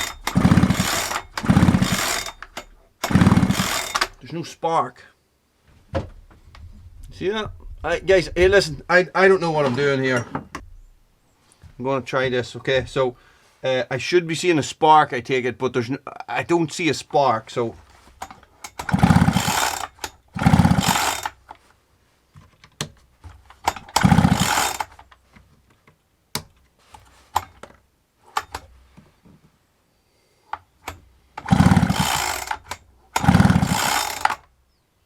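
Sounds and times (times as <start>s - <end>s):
chainsaw starter cord pulled: 0.0s - 4.2s, 18.2s - 21.6s, 23.3s - 25.2s, 26.9s - 27.7s, 28.3s - 28.7s, 30.8s - 34.5s
engine turning over: 0.0s - 4.2s, 18.6s - 21.4s, 23.7s - 25.0s, 30.8s - 34.4s.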